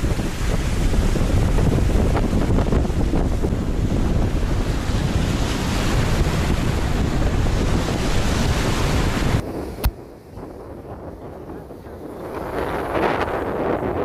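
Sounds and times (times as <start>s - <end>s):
rushing water: 0.0s - 10.6s
wind buffeting microphone: 0.0s - 14.0s.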